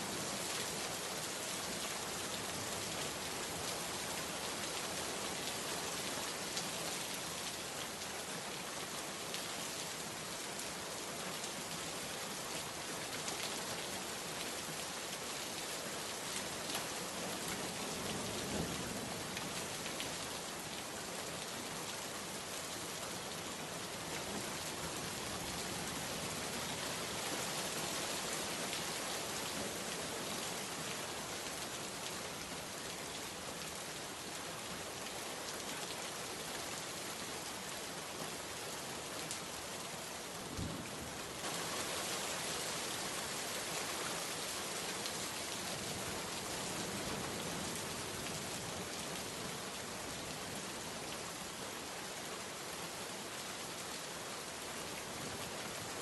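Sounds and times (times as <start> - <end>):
heavy rain pattering: 39.2 - 49.8.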